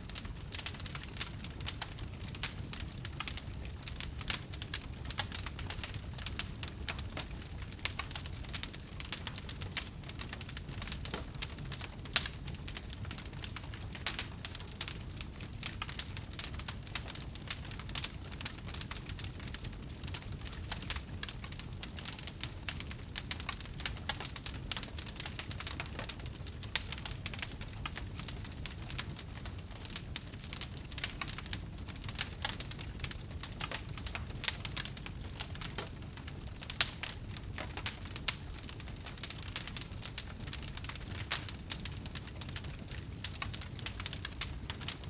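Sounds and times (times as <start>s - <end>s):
wood fire crackling: 0.0s - 45.0s.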